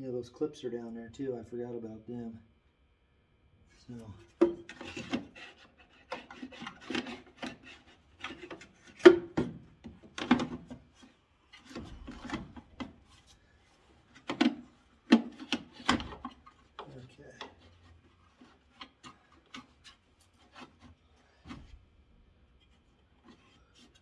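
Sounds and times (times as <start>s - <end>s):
hard plastic parts scraping and knocking: 4.2s - 21.8s.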